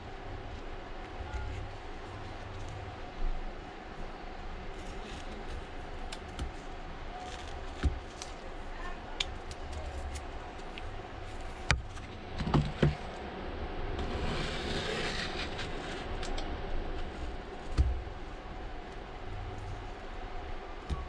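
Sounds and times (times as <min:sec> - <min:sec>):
steady low hum: 0:00.0 - 0:21.0
scraping adhesive: 0:14.0 - 0:16.1.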